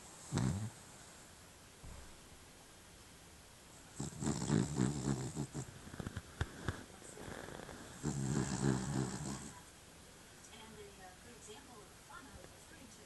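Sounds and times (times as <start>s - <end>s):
pet snoring: 0.1s - 0.9s, 3.9s - 9.6s.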